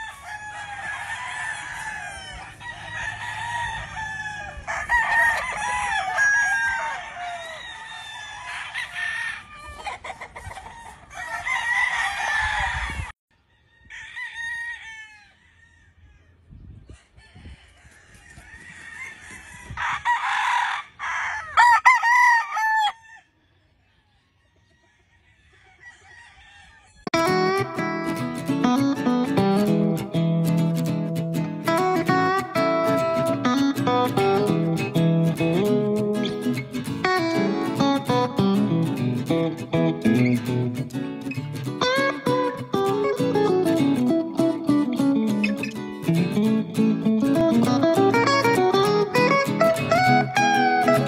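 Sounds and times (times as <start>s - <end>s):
roosters crowing: 0.0s - 23.5s, 24.6s - 27.6s
hens clucking: 9.6s - 11.1s.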